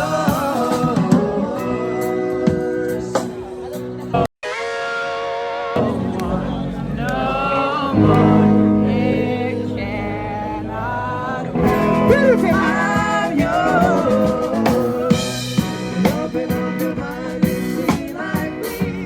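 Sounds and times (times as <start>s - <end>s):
drum kit: 0.0s - 4.0s, 11.6s - 19.0s
guitar: 0.0s - 19.0s
person singing: 5.6s - 19.0s.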